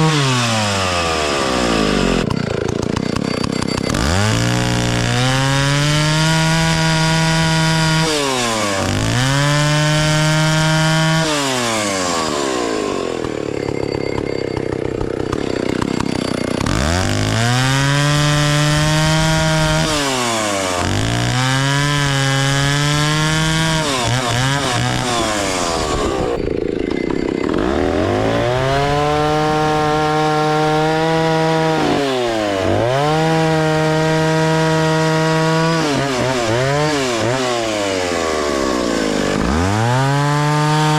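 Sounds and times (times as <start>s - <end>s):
chainsaw cutting wood: 0.0s - 40.9s
chainsaw revving: 0.0s - 40.9s.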